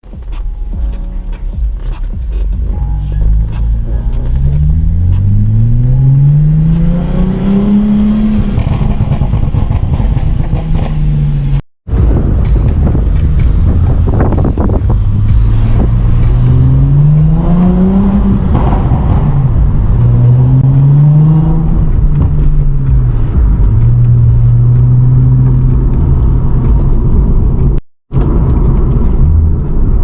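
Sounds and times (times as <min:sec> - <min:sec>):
car engine revving: 0:00.0 - 0:30.0
exhaust crackles and pops: 0:03.4 - 0:21.0.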